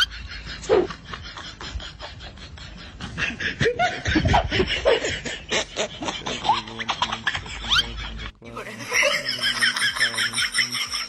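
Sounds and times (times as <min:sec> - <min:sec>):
person snickering: 0:00.1 - 0:08.2.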